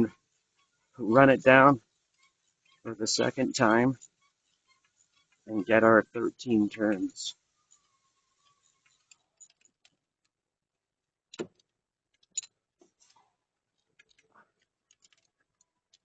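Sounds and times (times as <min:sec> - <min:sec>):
metallic clicks of hand tools: 0:11.3 - 0:12.5.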